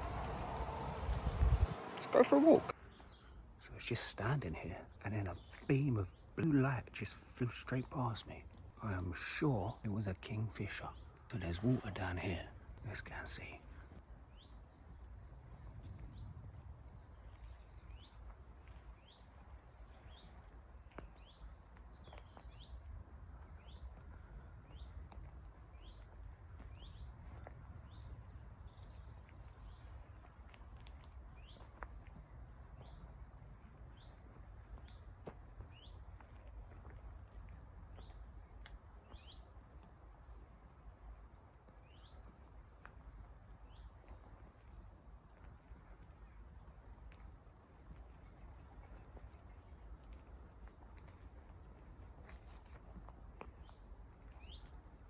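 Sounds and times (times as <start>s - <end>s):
low rumble: 0.0s - 3.0s.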